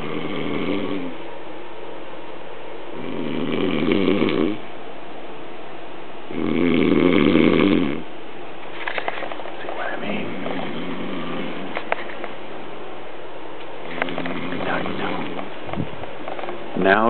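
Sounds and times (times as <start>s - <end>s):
person snoring: 0.0s - 1.2s, 3.0s - 4.6s, 6.3s - 8.0s, 9.8s - 11.8s, 13.9s - 15.5s.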